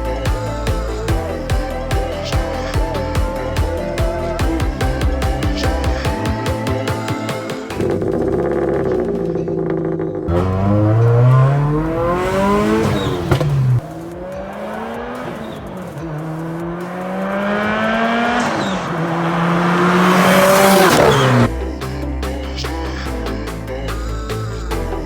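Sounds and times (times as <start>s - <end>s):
music: 0.0s - 18.4s, 20.2s - 25.0s
engine accelerating through gears: 7.8s - 13.8s, 14.6s - 21.7s.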